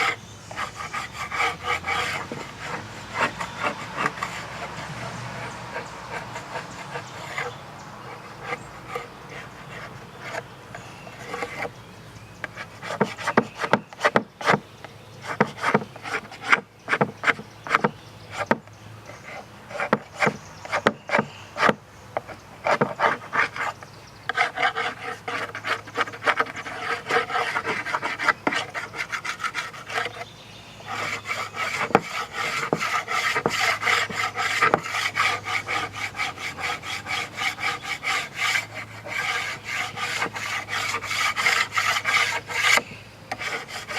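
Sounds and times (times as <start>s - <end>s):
hand sanding wood: 0.0s - 10.5s, 11.1s - 11.7s, 12.4s - 14.6s, 15.2s - 18.6s, 19.2s - 21.8s, 22.6s - 43.9s.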